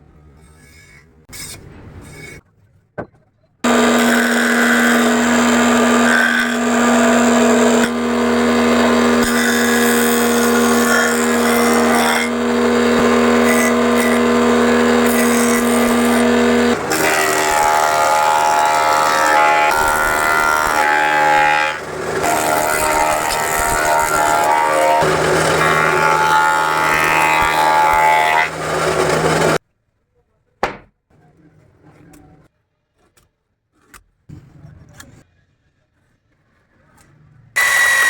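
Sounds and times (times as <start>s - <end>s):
power tool cutting wood: 3.6s - 29.6s, 37.6s - 38.0s.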